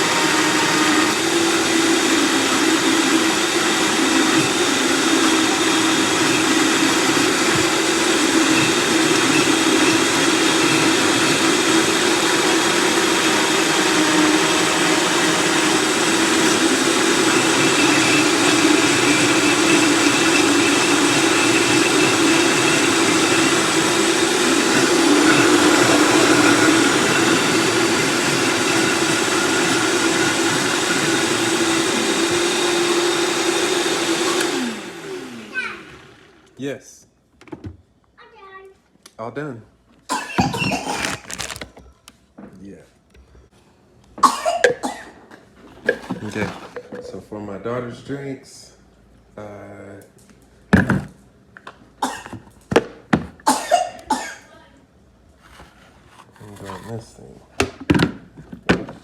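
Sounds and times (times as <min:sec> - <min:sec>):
blender motor running: 0:00.0 - 0:36.6.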